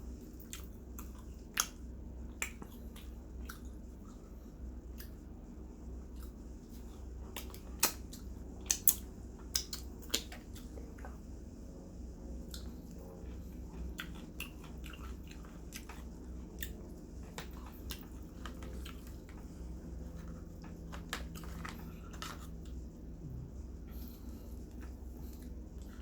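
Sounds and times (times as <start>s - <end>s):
low steady hum: 0.0s - 26.0s
person chewing chicken: 0.4s - 5.3s, 12.4s - 26.0s.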